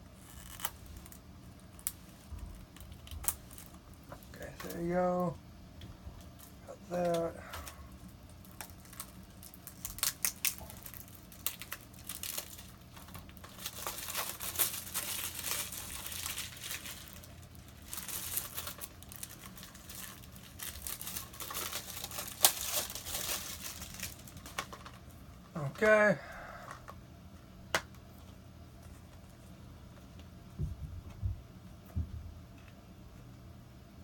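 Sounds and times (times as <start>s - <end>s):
plastic wrap crinkling: 0.0s - 5.3s, 6.2s - 25.2s.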